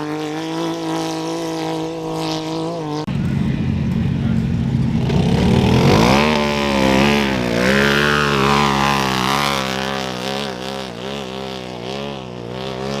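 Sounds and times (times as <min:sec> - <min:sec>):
engine note wavering in pitch: 0:00.0 - 0:13.0
low engine hum: 0:00.0 - 0:13.0.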